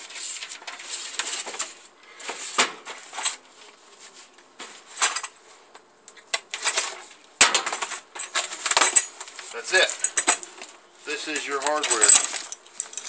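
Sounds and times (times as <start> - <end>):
rustling: 0.0 - 13.0
metallic clinks of loose parts: 8.2 - 10.5, 11.3 - 13.0.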